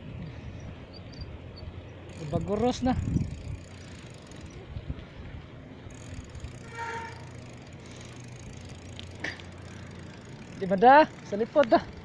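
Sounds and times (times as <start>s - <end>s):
constant low hum: 0.0s - 12.0s
rushing sandstorm wind: 2.3s - 3.8s.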